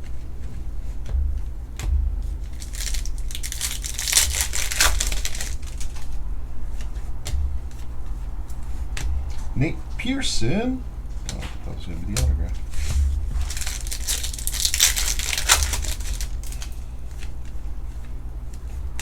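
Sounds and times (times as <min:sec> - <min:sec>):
card pack wrapper crinkling and tearing: 0:02.6 - 0:06.1, 0:12.8 - 0:16.8.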